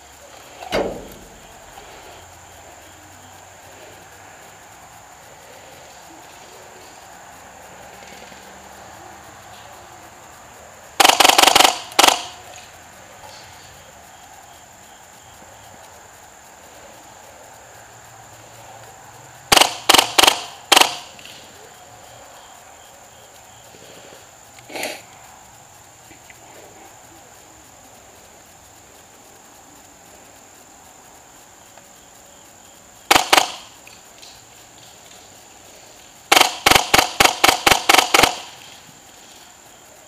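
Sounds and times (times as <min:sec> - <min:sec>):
insects chirring: 0:00.0 - 0:40.0
airsoft gunshots: 0:11.0 - 0:12.5, 0:19.5 - 0:21.3, 0:33.1 - 0:33.8, 0:36.3 - 0:38.7.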